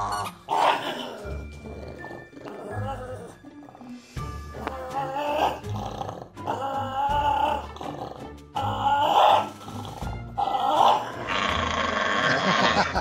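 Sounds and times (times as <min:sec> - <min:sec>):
pet animal wavering calls: 0:08.6 - 0:09.7.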